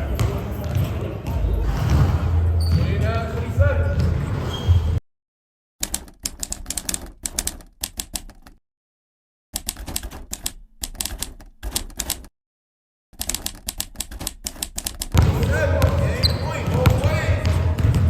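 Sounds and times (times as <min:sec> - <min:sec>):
typewriter keystrokes clicking: 0:05.8 - 0:08.6, 0:09.6 - 0:12.3, 0:13.2 - 0:15.2.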